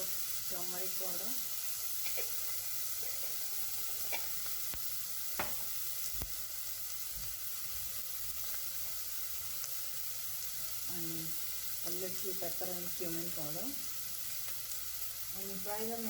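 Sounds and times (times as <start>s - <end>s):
onions sizzling in oil: 0.0s - 16.0s.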